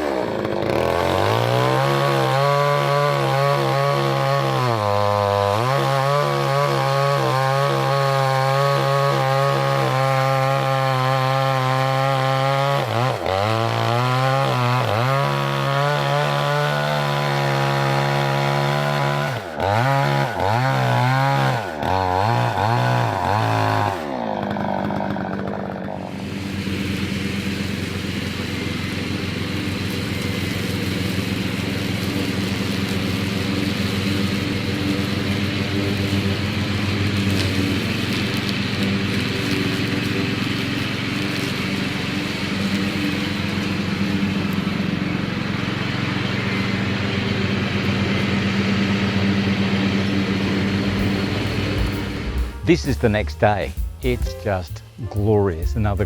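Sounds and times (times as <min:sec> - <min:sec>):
chainsaw cutting wood: 0:00.0 - 0:56.0.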